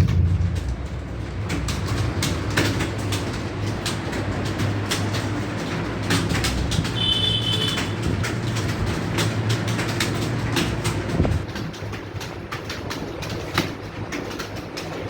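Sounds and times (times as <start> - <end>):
steady low hum: 0.0 - 5.8
keyboards clattering: 0.0 - 15.0.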